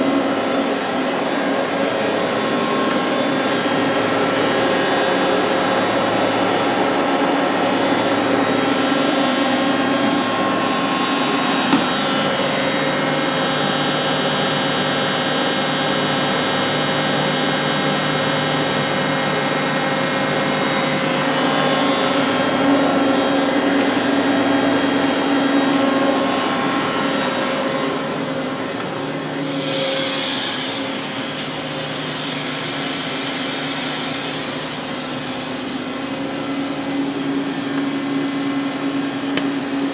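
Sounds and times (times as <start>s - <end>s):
lathe machine hum and whine: 0.0s - 39.9s.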